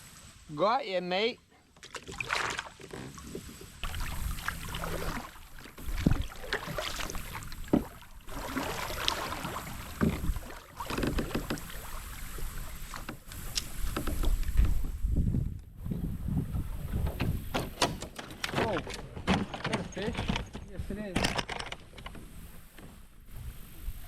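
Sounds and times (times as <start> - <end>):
water against kayak hull: 1.5 - 24.0
wind on microphone: 3.8 - 18.0, 22.2 - 24.0.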